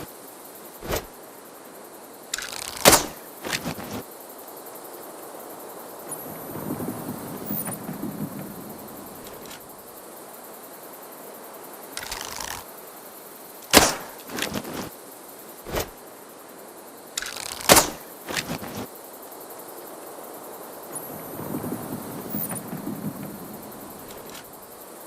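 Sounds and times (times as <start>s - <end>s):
bow rustle: 0.7s - 1.3s, 2.4s - 4.1s, 12.0s - 12.7s, 13.7s - 15.0s, 15.6s - 16.1s, 17.2s - 18.9s
arrow release crack: 0.8s - 1.1s, 2.4s - 4.0s, 12.0s - 12.6s, 13.7s - 14.9s, 17.2s - 18.9s.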